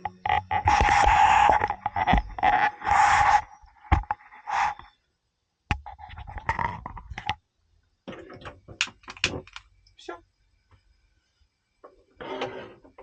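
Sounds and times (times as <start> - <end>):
gas hissing: 0.3 - 4.9.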